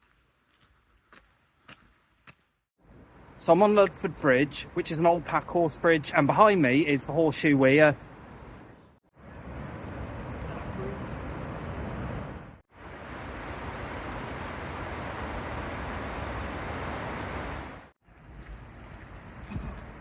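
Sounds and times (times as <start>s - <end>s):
water rushing over a weir: 12.8s - 17.9s.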